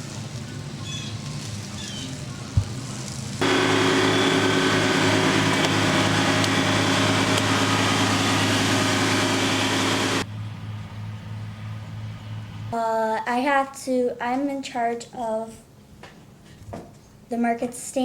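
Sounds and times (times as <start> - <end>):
motor hum: 3.4 - 10.3.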